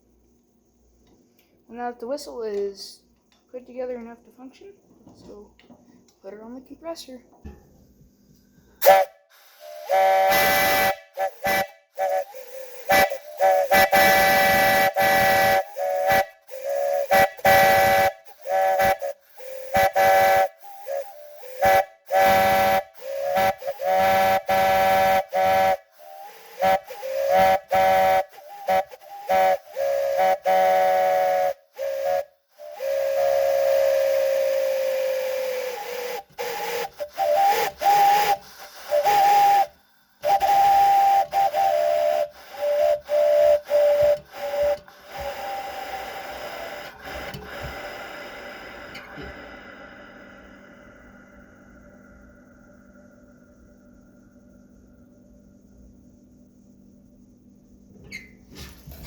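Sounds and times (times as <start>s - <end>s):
air hiss: 8.8s - 53.6s.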